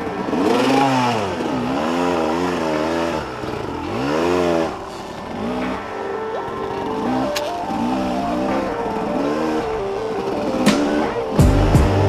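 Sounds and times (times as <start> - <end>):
dirt bike engine revving: 0.0 - 12.0.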